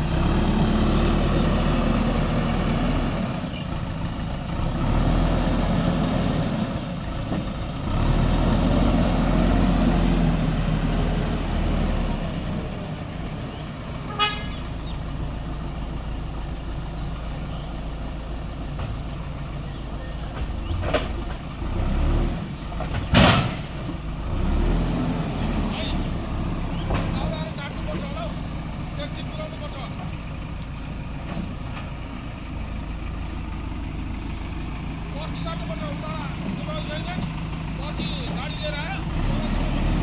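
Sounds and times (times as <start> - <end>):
diesel engine revving: 0.0 - 40.0
vehicle horn beep: 14.0 - 14.8.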